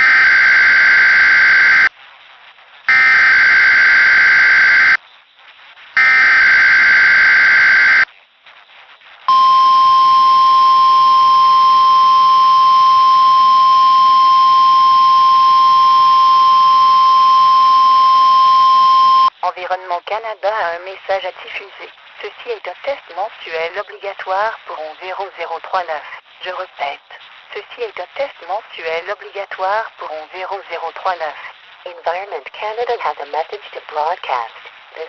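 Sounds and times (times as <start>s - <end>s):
steady warning tone: 0.0s - 1.9s, 2.9s - 5.0s, 6.0s - 8.1s, 9.3s - 19.3s
warbling data tones: 2.9s - 5.0s, 6.0s - 8.1s, 9.3s - 19.3s.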